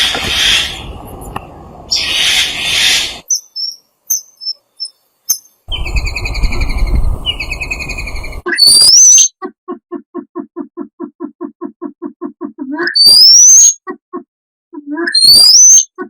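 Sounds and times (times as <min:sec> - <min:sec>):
bird hissing screech: 0:00.0 - 0:00.8, 0:01.9 - 0:03.2
bird chirps and clicks: 0:03.3 - 0:14.2, 0:14.8 - 0:16.0
bird rattling trill: 0:05.7 - 0:09.2.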